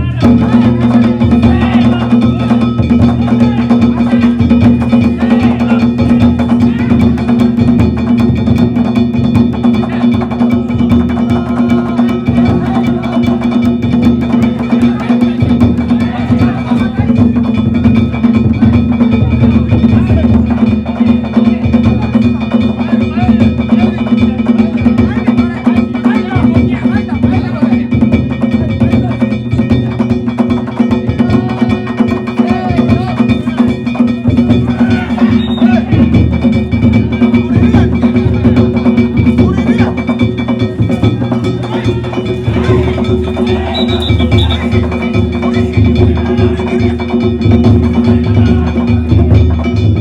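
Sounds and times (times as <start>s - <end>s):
drums beaten in fast pattern: 0.0s - 50.0s
metal gongs ringing: 28.9s - 50.0s.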